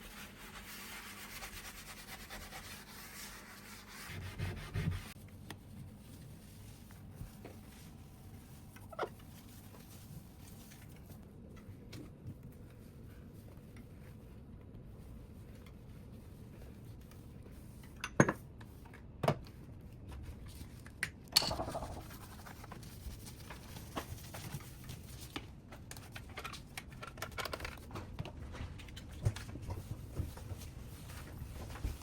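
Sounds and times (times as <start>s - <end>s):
sharp knocks and clatters: 21.3s - 22.4s.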